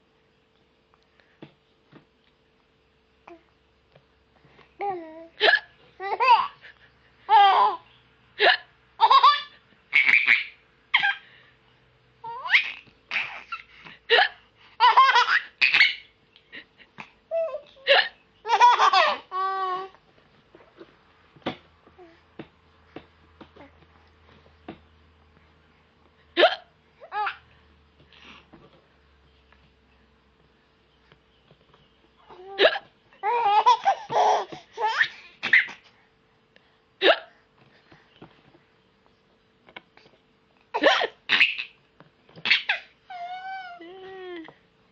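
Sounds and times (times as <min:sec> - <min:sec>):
baby laughing: 0:05.4 - 0:06.7, 0:07.3 - 0:07.9, 0:09.0 - 0:11.2, 0:12.2 - 0:16.2, 0:17.3 - 0:20.0, 0:27.0 - 0:27.5, 0:32.3 - 0:35.9, 0:42.4 - 0:43.8
woman hiccuping: 0:26.4 - 0:26.7, 0:32.5 - 0:32.9, 0:37.0 - 0:37.3.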